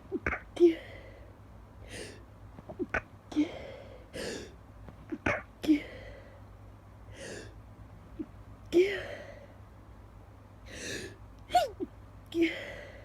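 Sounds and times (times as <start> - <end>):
person sneezing: 5.1 - 5.5, 11.5 - 11.9.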